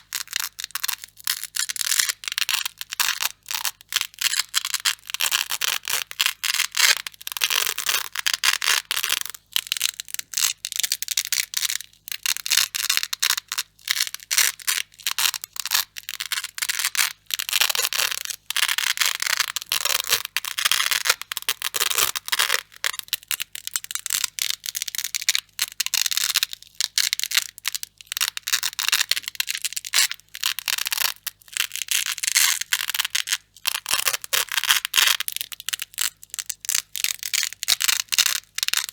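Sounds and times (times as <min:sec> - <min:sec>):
velcro ripping: 0:14.3 - 0:23.0.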